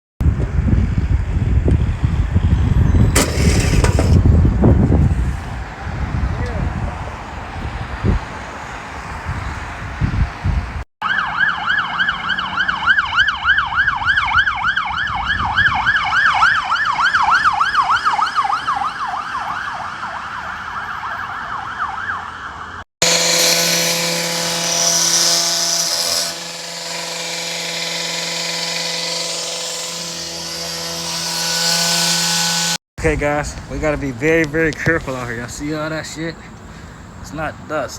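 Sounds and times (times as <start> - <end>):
siren in fast yelp mode: 11.0 - 22.8.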